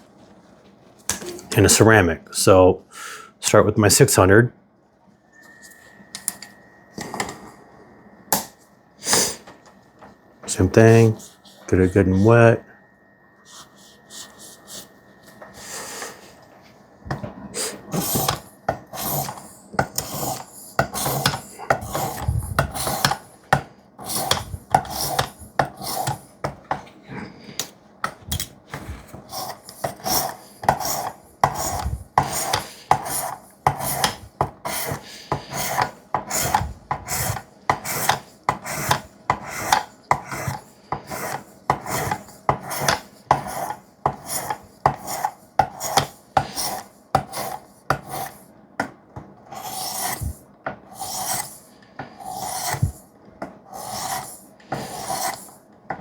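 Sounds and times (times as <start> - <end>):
knife rasping on sharpening stone: 17.9 - 23.3, 24.0 - 26.2, 29.3 - 48.3, 49.5 - 50.3, 50.9 - 52.9, 53.8 - 55.5.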